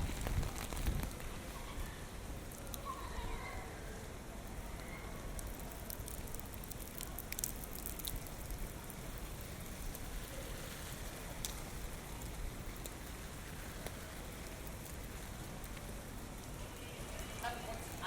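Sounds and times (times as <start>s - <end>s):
strong wind rumbling: 0.0s - 1.2s
heavy rain falling: 0.0s - 2.8s, 3.8s - 18.0s.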